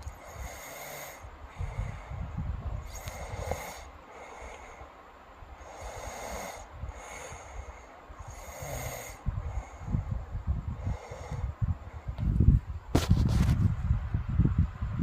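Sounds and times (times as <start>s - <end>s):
girl snoring and snorting: 0.2s - 1.8s, 2.8s - 4.5s, 5.6s - 7.4s, 8.2s - 9.7s.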